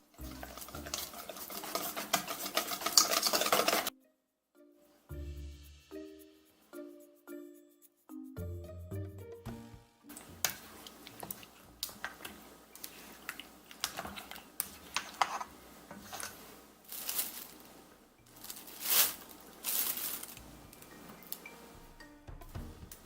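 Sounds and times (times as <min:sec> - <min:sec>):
short rustles: 0:13.9 - 0:21.5.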